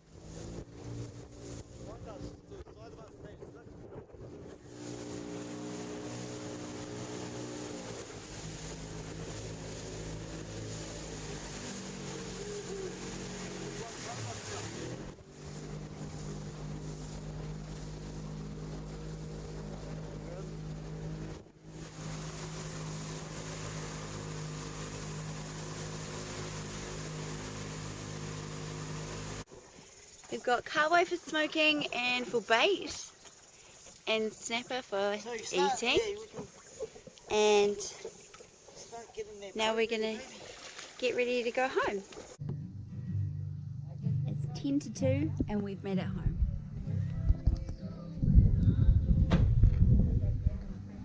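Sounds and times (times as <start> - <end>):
motorboat engine running: 0.0 - 51.0
wind: 0.0 - 51.0
water hiss: 4.6 - 20.0, 21.1 - 42.4.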